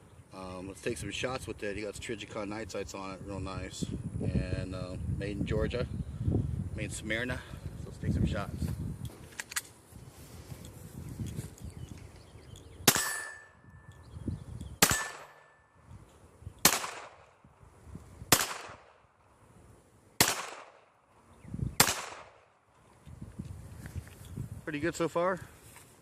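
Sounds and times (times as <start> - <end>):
pistol shots: 12.8 - 13.6, 14.8 - 15.6, 16.6 - 17.4, 18.3 - 19.1, 20.2 - 21.0, 21.8 - 22.6.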